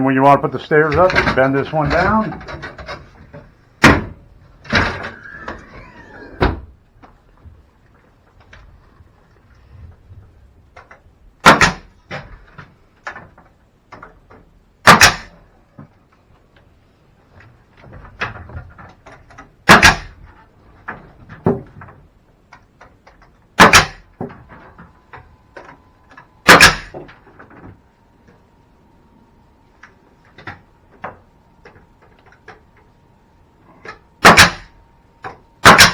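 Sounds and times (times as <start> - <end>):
loud wooden strikes: 0.5 - 6.8, 10.8 - 15.9, 17.8 - 21.9, 22.7 - 24.9, 26.1 - 27.7, 33.8 - 35.9.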